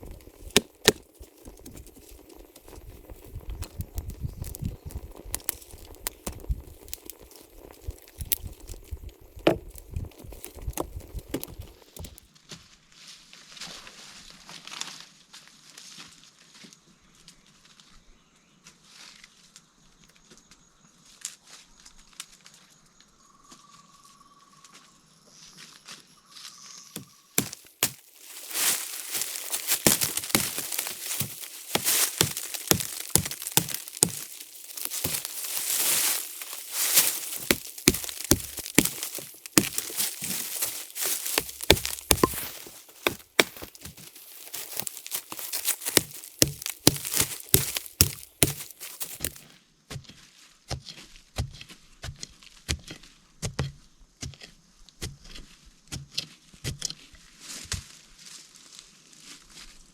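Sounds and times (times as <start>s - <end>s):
dry leaves and twigs crackling: 0.0s - 12.4s, 13.0s - 16.1s, 25.7s - 49.5s.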